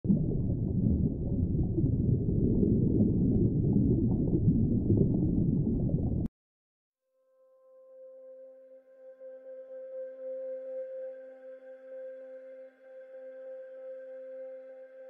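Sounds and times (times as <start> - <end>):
deep dense rumble: 0.0 - 6.3.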